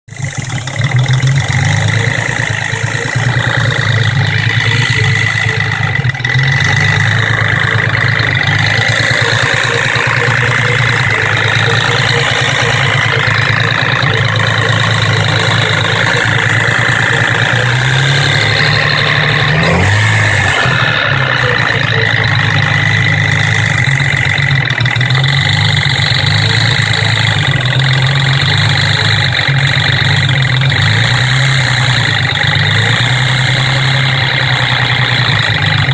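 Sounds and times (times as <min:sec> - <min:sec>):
car engine running: 0:00.0 - 0:35.9
engine rattling noise: 0:00.0 - 0:35.9.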